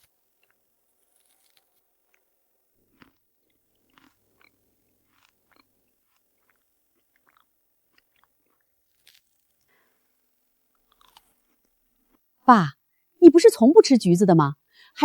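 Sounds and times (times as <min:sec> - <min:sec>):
mandarin orange being peeled: 0:00.0 - 0:02.3, 0:03.9 - 0:09.7.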